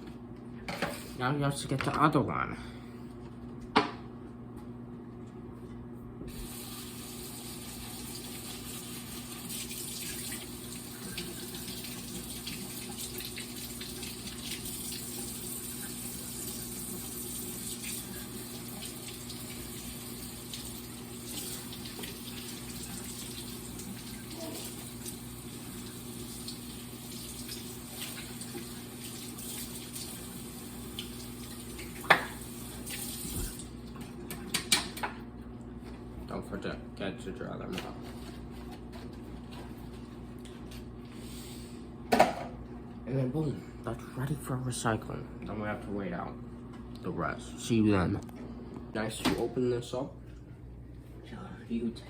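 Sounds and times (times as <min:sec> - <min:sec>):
tap water running: 0:06.2 - 0:36.0.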